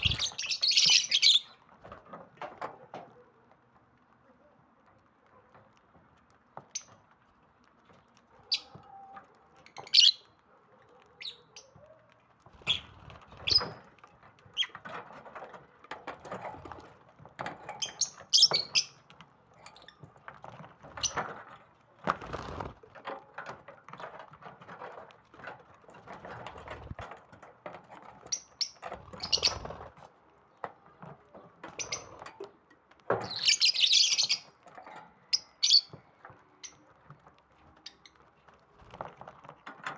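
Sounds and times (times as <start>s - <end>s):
lovebirds chirping: 0.0s - 1.7s, 8.4s - 8.8s, 9.6s - 10.4s, 11.2s - 13.8s, 17.8s - 19.0s, 28.3s - 29.8s, 31.7s - 32.2s, 33.2s - 34.6s, 35.3s - 37.0s.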